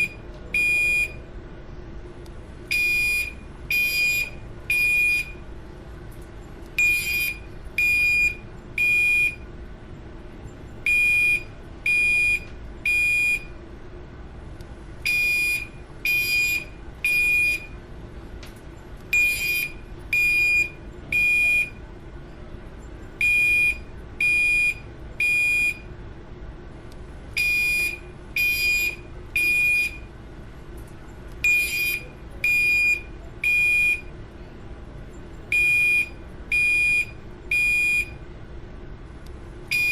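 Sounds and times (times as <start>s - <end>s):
fire alarm beeps: 0.0s - 1.3s, 2.7s - 5.5s, 6.8s - 9.5s, 10.8s - 13.6s, 15.0s - 17.8s, 19.1s - 21.8s, 23.2s - 25.9s, 27.3s - 30.1s, 31.4s - 34.1s, 35.5s - 38.2s, 39.7s - 39.9s.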